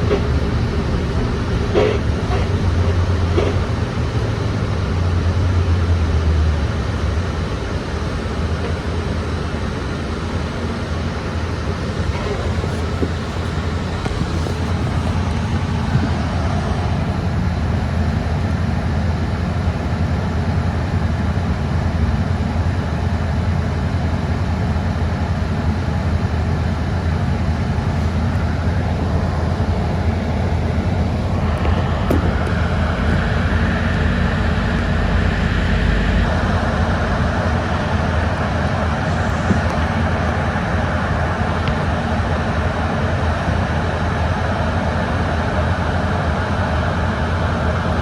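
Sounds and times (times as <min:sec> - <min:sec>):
bus engine and road rumble: 0:00.0 - 0:48.0.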